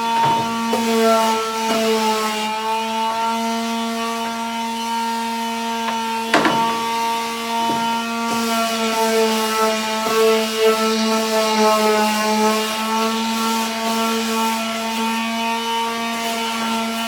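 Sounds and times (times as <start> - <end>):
sharp knock: 5.9 - 8.1.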